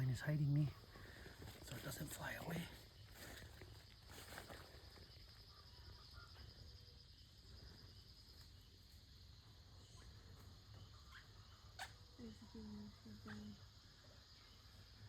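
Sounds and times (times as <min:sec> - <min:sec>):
high pulsing insect trill: 0:00.0 - 0:15.0.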